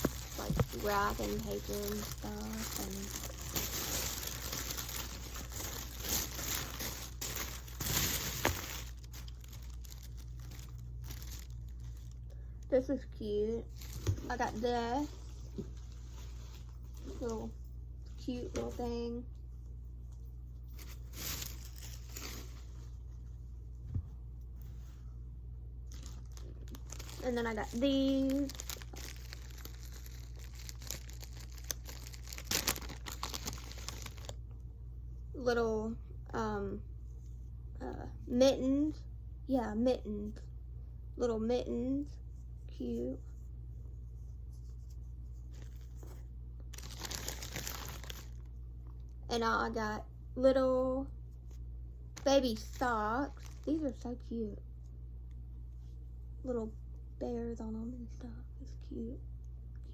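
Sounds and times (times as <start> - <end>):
wrapping paper crinkling: 0.0 - 12.5, 13.6 - 17.5, 20.8 - 23.0, 25.8 - 34.5, 44.2 - 48.6, 52.2 - 54.1.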